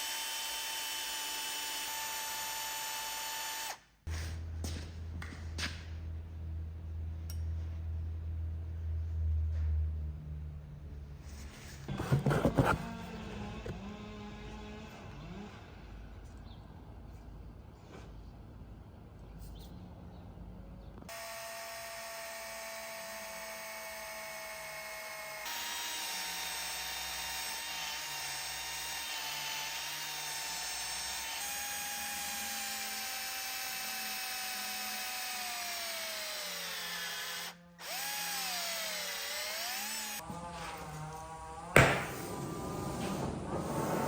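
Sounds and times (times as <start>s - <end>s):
power tool motor whining: 21.1s - 42.6s.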